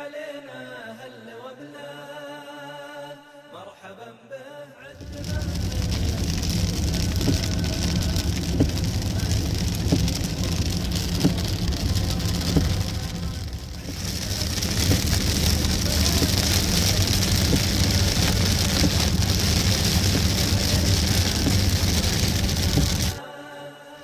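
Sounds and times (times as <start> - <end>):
rain falling: 5.0 - 23.2
raindrop ticks: 5.0 - 23.2
steady low rumble: 5.0 - 23.2.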